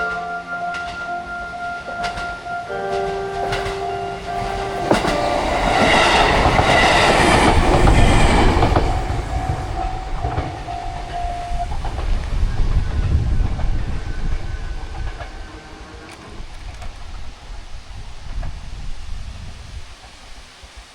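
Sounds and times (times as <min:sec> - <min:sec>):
level crossing alarm ringing: 0:00.0 - 0:16.3
train horn: 0:00.0 - 0:16.6
train wheels clacking on rails: 0:00.0 - 0:18.6.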